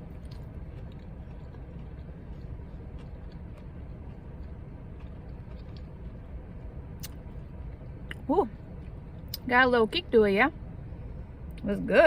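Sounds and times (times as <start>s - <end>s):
faint chewing clicks: 0.0s - 6.3s
car cabin low rumble: 0.0s - 12.0s.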